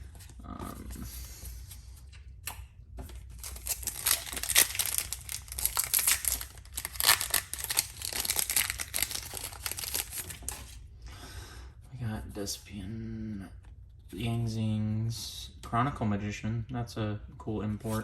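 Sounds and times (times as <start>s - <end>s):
foil wrapper tearing and crinkling: 3.3s - 10.6s.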